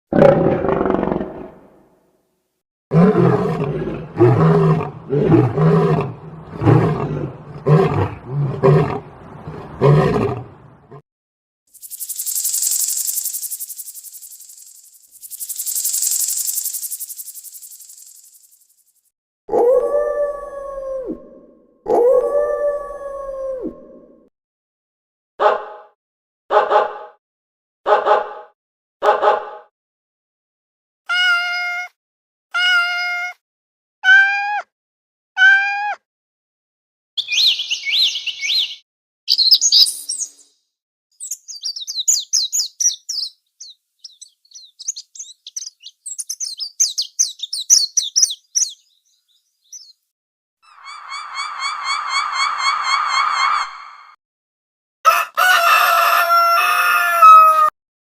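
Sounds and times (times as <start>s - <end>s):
big cat roaring: 0.1s - 1.7s, 2.9s - 11.0s
dog barking: 25.4s - 25.9s, 26.5s - 27.1s, 27.8s - 29.7s.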